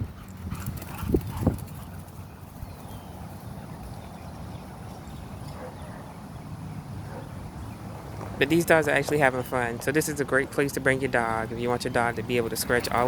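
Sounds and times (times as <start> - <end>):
low outdoor background noise: 0.0 - 13.0
dog barking: 5.5 - 6.2, 7.0 - 7.3.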